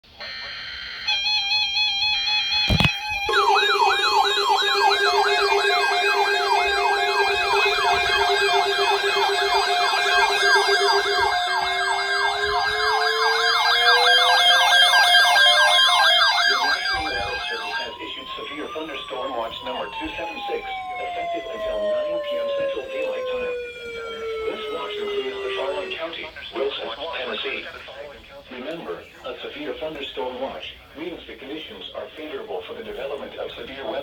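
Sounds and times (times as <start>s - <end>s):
siren yelp: 0.2s - 27.4s
siren wail rising: 1.9s - 26.9s
pulsing low siren tone: 2.7s - 26.5s.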